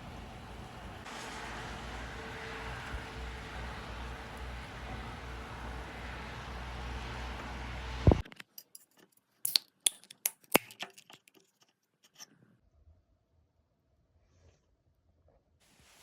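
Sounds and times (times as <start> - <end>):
steady rushing noise: 0.0 - 8.2.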